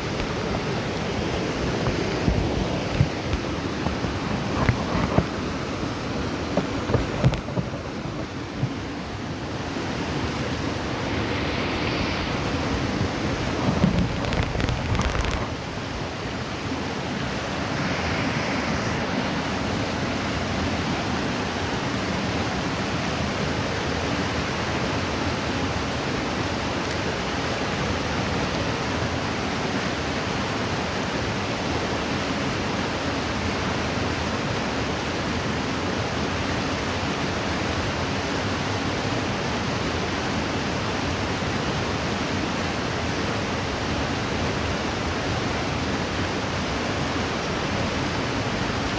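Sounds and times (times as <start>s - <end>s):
wind buffeting microphone: 0.0s - 21.9s
river water rushing: 0.0s - 48.9s.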